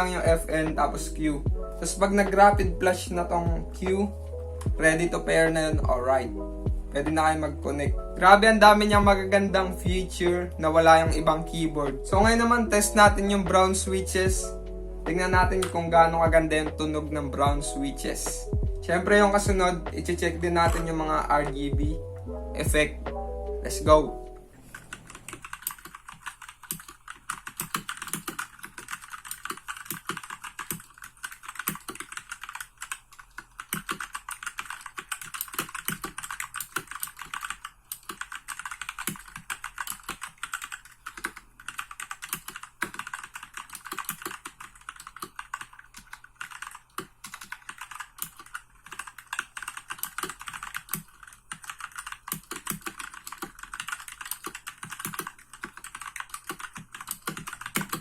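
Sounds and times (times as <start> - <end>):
mechanical keyboard typing: 20.0 - 20.9, 24.6 - 58.0.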